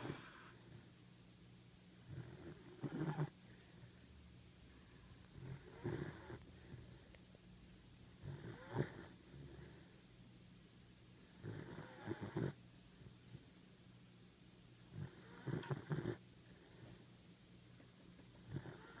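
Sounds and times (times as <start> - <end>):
puppy snoring: 0.0 - 1.1, 2.0 - 4.1, 5.3 - 7.2, 8.2 - 10.1, 11.3 - 13.8, 14.9 - 17.1, 18.4 - 19.0.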